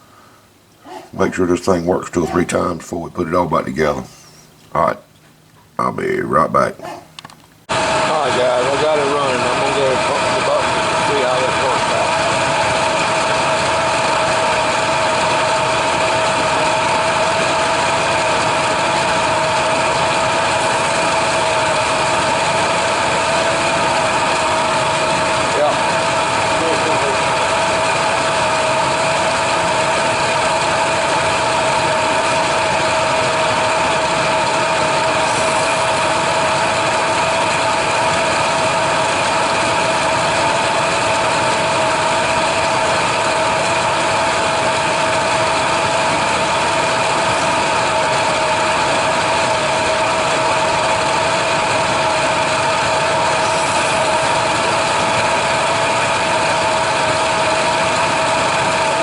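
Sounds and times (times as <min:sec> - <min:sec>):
steady whine: 0:00.0 - 0:59.0
pickup engine idling: 0:33.9 - 0:59.0.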